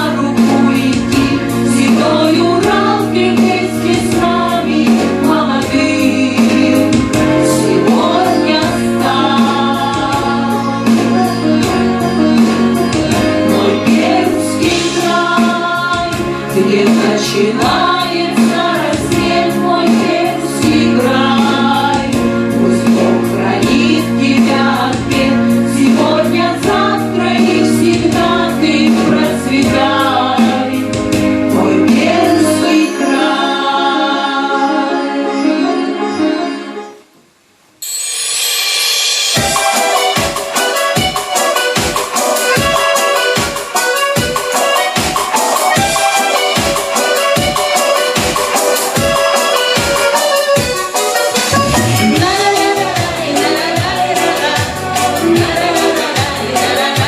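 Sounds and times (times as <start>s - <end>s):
instrumental accompaniment with beat: 0.0s - 34.3s, 35.9s - 57.0s
group of voices singing: 0.0s - 36.8s, 51.3s - 57.0s.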